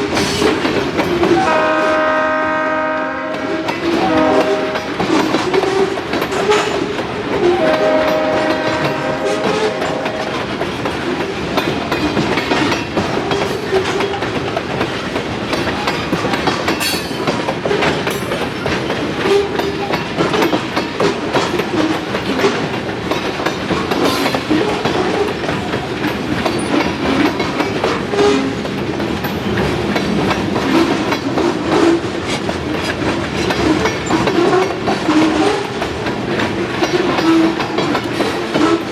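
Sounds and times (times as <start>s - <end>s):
wheels clicking over rail joints: 0.0s - 1.8s, 3.3s - 38.9s
train wheels rumbling on rail: 0.0s - 38.9s
locomotive air horn: 1.3s - 6.8s, 7.4s - 10.4s.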